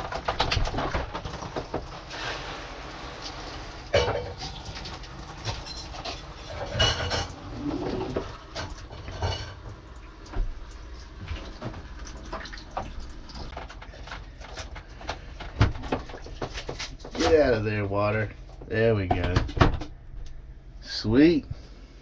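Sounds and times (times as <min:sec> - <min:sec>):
water trickling and dripping: 0:01.1 - 0:14.9.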